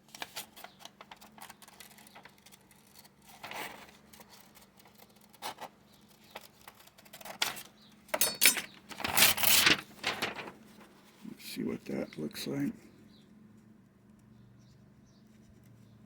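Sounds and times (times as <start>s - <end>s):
paper snipping and rustling: 0.1s - 11.1s.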